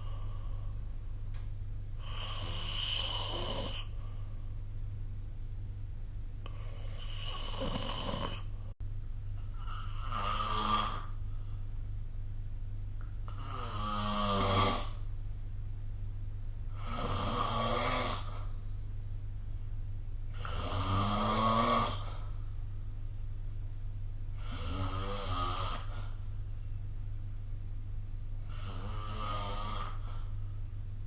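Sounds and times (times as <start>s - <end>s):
steady low hum: 0.0s - 31.0s
person snoring: 2.0s - 4.0s, 6.4s - 8.6s, 9.5s - 11.2s, 13.3s - 15.0s, 16.7s - 18.6s, 20.3s - 22.4s, 24.4s - 26.2s, 28.4s - 30.4s.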